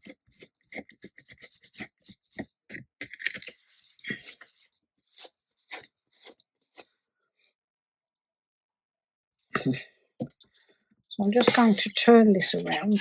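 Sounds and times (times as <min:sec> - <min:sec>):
crinkly rubbing strokes: 0:11.4 - 0:13.0.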